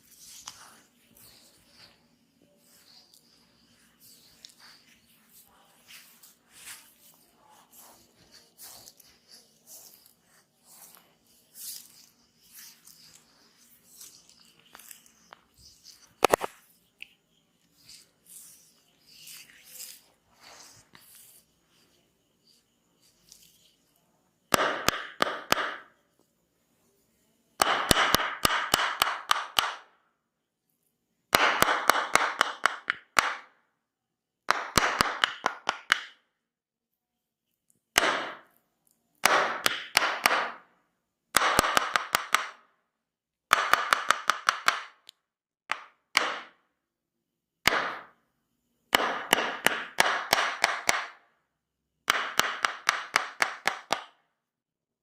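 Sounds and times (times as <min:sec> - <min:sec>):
percussive massage strikes: 0:24.5 - 0:25.9, 0:27.6 - 0:29.9, 0:34.5 - 0:36.2, 0:38.0 - 0:38.4, 0:39.2 - 0:40.6, 0:47.7 - 0:48.2, 0:49.0 - 0:51.2, 0:52.1 - 0:54.2.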